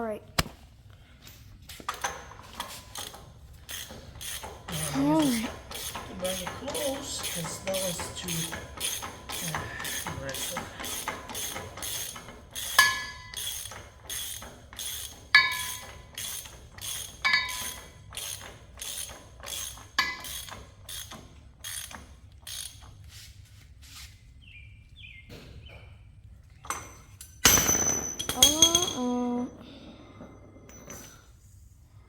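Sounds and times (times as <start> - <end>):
hand ratchet clicking: 1.7 - 23.0
ringing metallic clank: 15.4 - 16.0, 17.2 - 17.8, 27.4 - 29.5.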